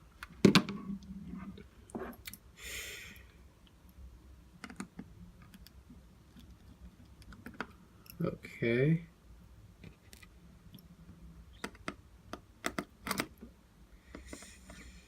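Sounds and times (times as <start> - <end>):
clicks of tools and phone parts: 11.6 - 13.4.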